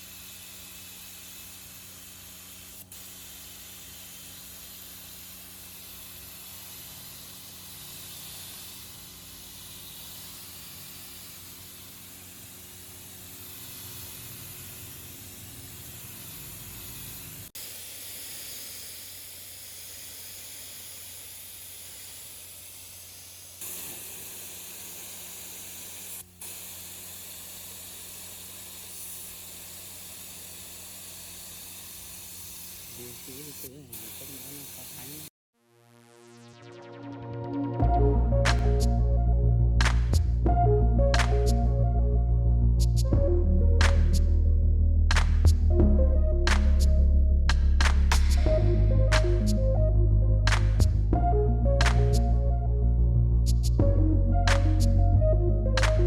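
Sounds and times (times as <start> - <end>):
spray gun air hiss: 0.0 - 35.3.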